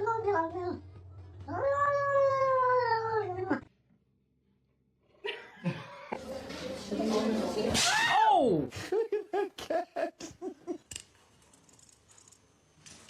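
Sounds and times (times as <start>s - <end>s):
cat yowling: 1.5s - 3.6s.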